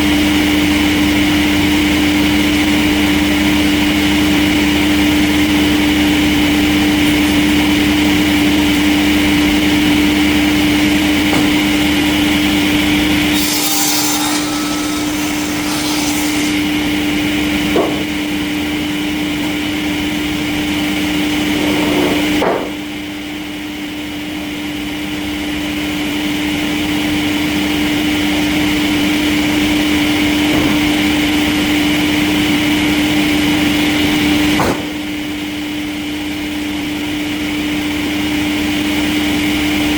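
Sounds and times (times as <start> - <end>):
sawmill machine hum: 0.0 - 39.9
sawing noise: 9.3 - 16.7
sharp knock: 34.6 - 35.0.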